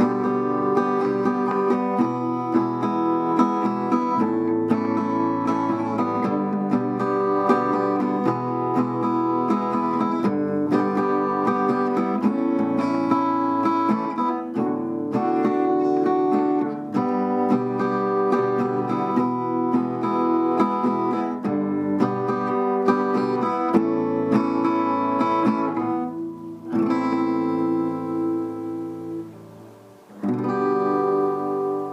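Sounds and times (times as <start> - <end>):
acoustic guitar chords: 0.0 - 31.9.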